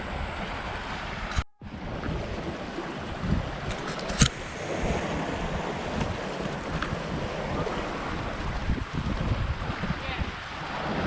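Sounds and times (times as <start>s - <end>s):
waves splashing: 0.0s - 11.0s
wind buffeting microphone: 0.0s - 11.0s.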